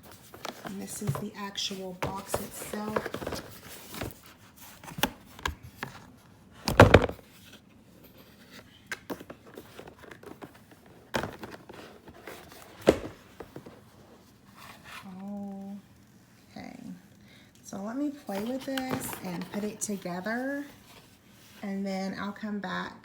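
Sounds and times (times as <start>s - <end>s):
packaging scraping and crinkling: 0.0s - 6.2s, 7.1s - 16.4s, 18.1s - 21.6s
packaging rustling and clicking: 0.0s - 7.5s, 8.2s - 13.9s, 18.2s - 21.1s.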